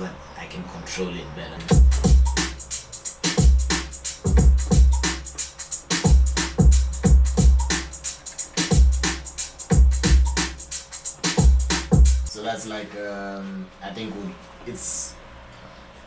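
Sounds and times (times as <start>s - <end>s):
electronic drum groove: 1.6s - 12.5s.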